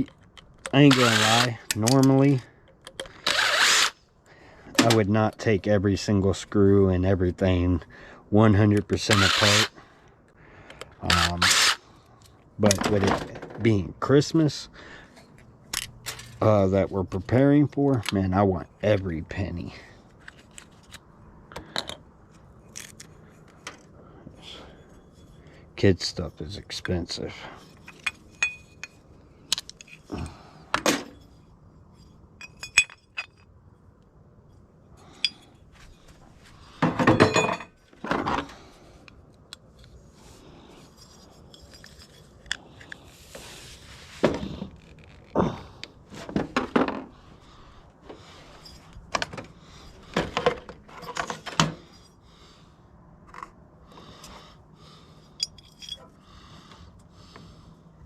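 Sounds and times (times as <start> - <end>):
metal parts clinking: 0.0 - 4.0, 11.0 - 13.3, 15.7 - 16.6, 20.1 - 23.9, 26.7 - 33.6, 35.0 - 36.1, 37.0 - 40.1, 40.7 - 43.4, 48.2 - 52.1, 55.2 - 56.2.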